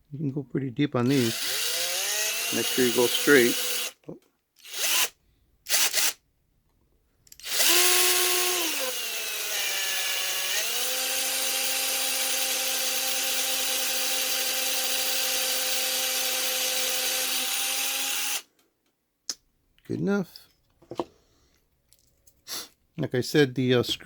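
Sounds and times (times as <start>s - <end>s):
electric drill whining: 1.1s - 4.0s, 4.6s - 6.2s, 7.4s - 18.5s.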